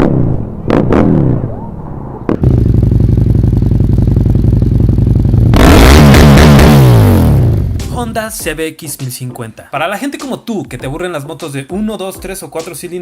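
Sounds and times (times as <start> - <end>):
motorcycle engine revving: 2.4 - 7.8.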